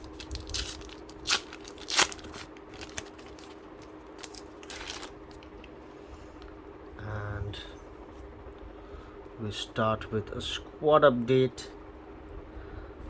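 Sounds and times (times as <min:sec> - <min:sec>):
foil wrapper crinkling: 0:00.0 - 0:05.7
faint steady hum: 0:00.0 - 0:13.0.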